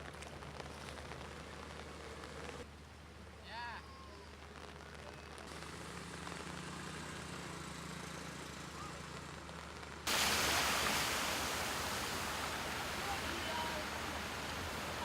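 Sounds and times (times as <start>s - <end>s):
faint engine hum: 0.0s - 10.1s
street ambience: 0.0s - 10.2s
steady hiss: 10.1s - 15.0s.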